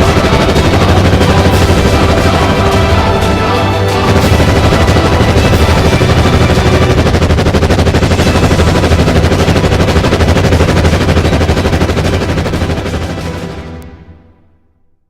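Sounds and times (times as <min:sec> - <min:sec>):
machine-gun automatic fire: 0:00.0 - 0:03.3, 0:04.0 - 0:13.4.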